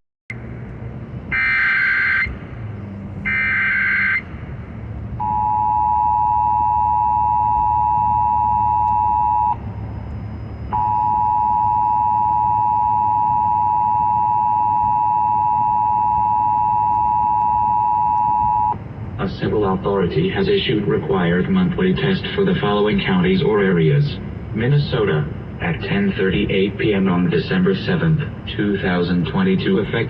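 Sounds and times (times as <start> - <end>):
two-tone attention signal: 5.2 - 9.6, 10.7 - 18.8.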